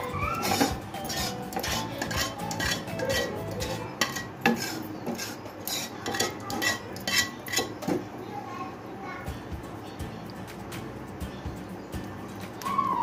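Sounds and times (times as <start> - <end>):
spoon scraping a dish: 0.3 - 8.0
utensil knocking on cookware: 0.4 - 8.0.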